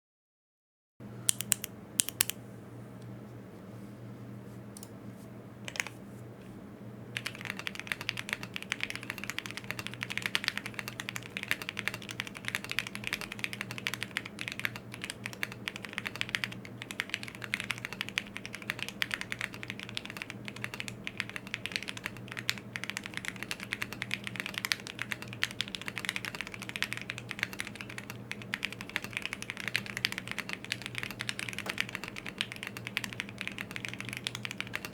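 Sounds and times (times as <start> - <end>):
mechanical keyboard typing: 1.3 - 2.4, 5.7 - 5.9, 7.2 - 34.9.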